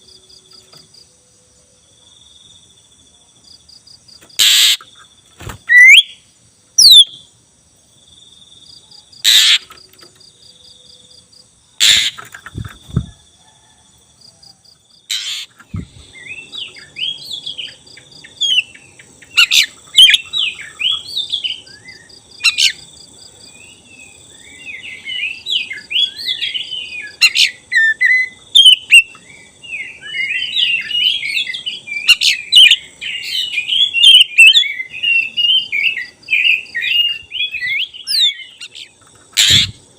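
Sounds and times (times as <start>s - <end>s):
bird singing: 0.0s - 7.4s, 8.3s - 39.9s.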